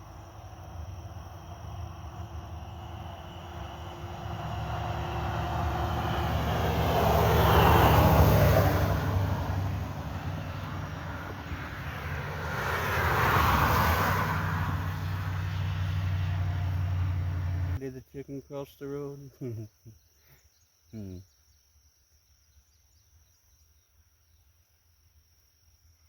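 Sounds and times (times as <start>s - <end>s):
vehicles driving past: 0.0s - 17.8s.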